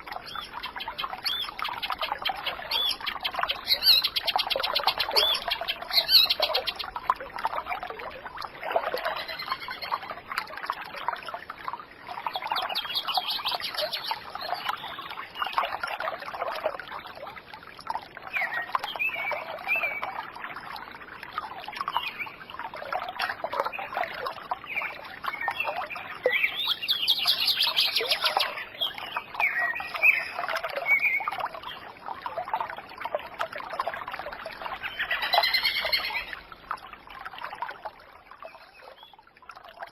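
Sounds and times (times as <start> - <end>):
birds chirping: 0.2 - 7.0, 12.4 - 15.1, 24.7 - 31.3, 34.7 - 36.3.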